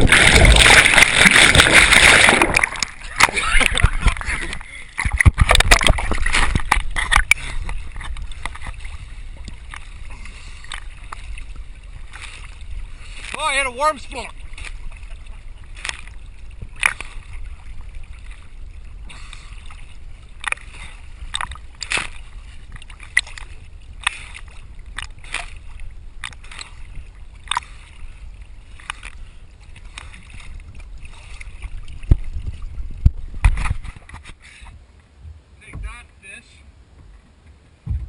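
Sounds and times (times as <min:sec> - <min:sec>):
wind rumble on microphone: 0:00.0 - 0:02.7, 0:29.6 - 0:35.9, 0:36.9 - 0:38.0
water splashing against boat: 0:00.0 - 0:38.0
heavy knocks against boat: 0:35.2 - 0:36.0, 0:37.0 - 0:38.0.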